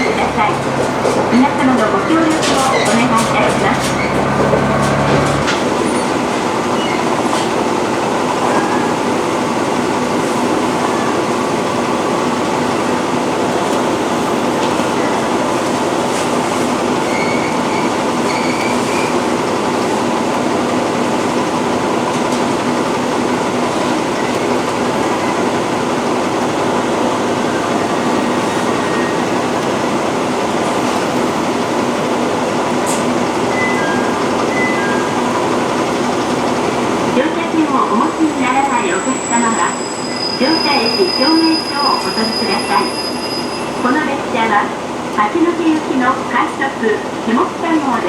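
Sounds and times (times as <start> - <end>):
train rumbling: 0.0 - 48.0
faint wheel squeals: 17.0 - 19.3, 38.8 - 43.9.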